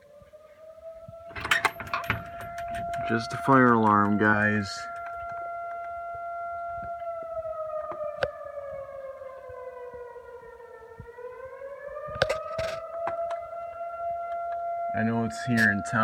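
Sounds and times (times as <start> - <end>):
fire siren tone: 0.0 - 16.0.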